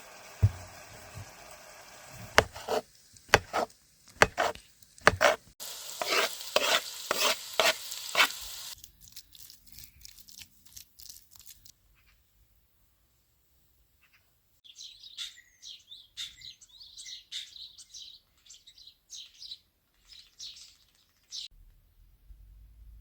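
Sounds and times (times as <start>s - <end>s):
food sizzling while stirred: 0.0s - 9.5s
utensil knocking on pan: 0.4s - 0.8s, 2.4s - 5.4s.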